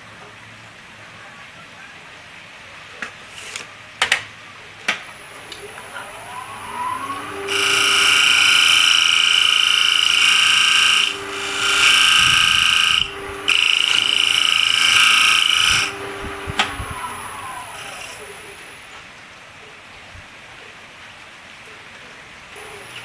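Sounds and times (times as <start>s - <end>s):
wood lathe spinning: 5.2s - 19.0s
turning tool cutting wood: 5.4s - 19.0s.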